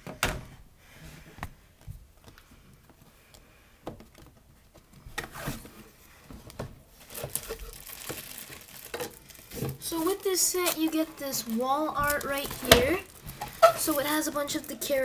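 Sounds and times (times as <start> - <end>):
cardboard rustling: 4.0 - 15.0.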